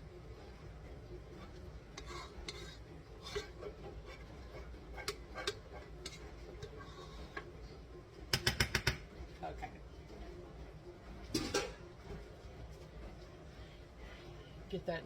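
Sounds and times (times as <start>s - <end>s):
utensil scraping and tapping pot: 1.2s - 9.1s.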